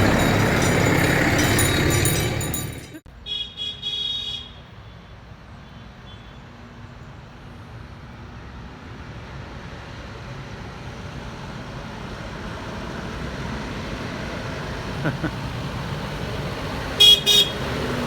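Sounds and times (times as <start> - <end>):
tractor engine rumbling: 0.0 - 3.1.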